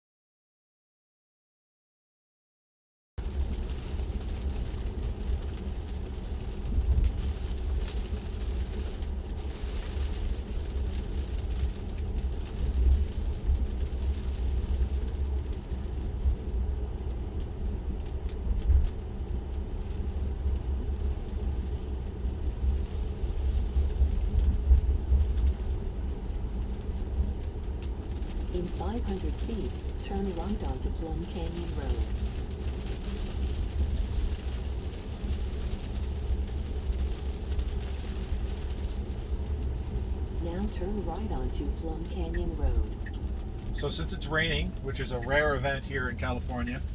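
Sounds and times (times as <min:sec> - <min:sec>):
water hissing from tyres: 0:03.2 - 0:42.3, 0:43.0 - 0:46.9
tyre and road rumble: 0:03.2 - 0:46.9.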